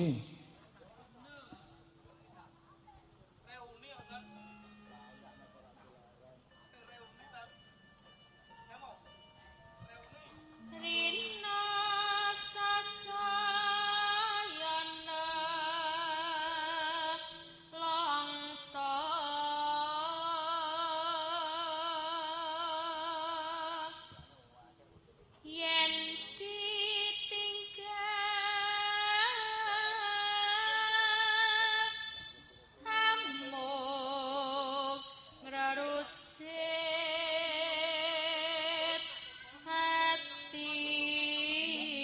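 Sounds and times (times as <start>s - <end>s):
woman singing with vibrato: 10.6s - 24.2s, 25.5s - 42.0s.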